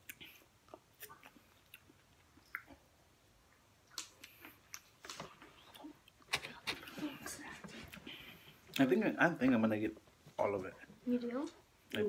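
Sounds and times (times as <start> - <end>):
wet mouth clicks and smacks: 0.0 - 2.8, 3.8 - 6.5
faint chewing of food: 0.0 - 9.7.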